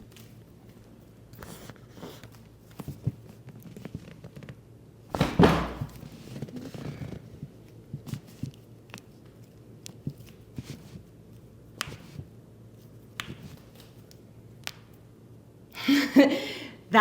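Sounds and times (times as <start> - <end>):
soft handling sounds: 0.0 - 14.3
loud thunk: 5.1 - 6.0.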